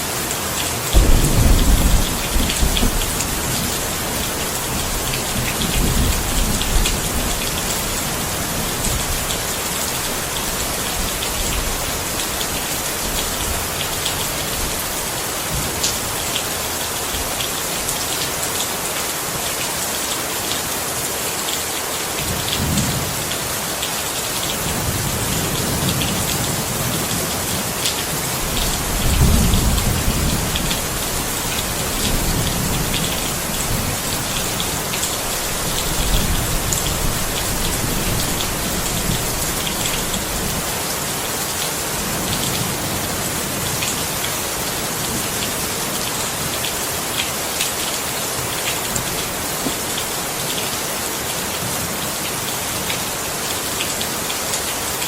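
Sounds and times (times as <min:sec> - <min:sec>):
rain falling: 0:00.0 - 0:55.0
low rumbles of thunder: 0:00.9 - 0:09.2, 0:28.4 - 0:40.6.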